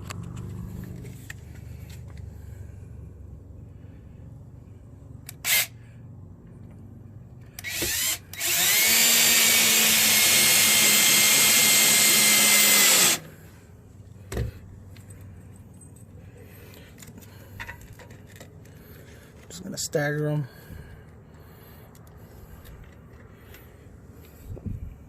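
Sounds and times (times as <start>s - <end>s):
power drill running: 5.3s - 5.7s, 7.6s - 13.3s.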